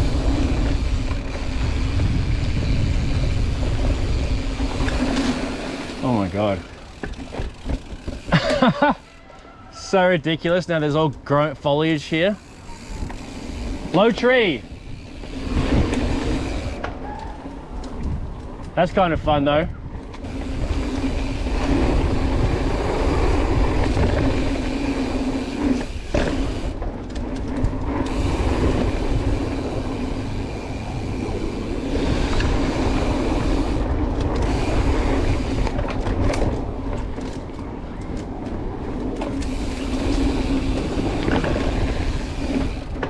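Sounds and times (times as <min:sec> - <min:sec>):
wind noise on camera: 0:00.0 - 0:05.6, 0:14.8 - 0:43.0
bike chain and frame rattling: 0:00.0 - 0:43.0
knobby tyres rolling on dirt: 0:00.0 - 0:43.0.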